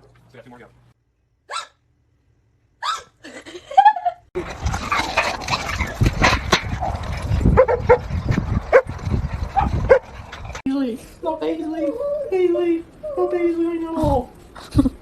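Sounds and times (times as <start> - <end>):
dog barking and yipping: 1.5 - 1.8, 6.8 - 8.1, 8.7 - 8.9, 9.5 - 10.2.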